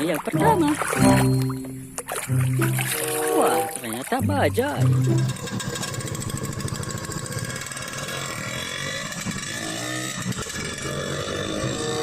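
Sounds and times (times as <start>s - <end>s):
auto-rickshaw engine rattling: 3.3s - 12.0s.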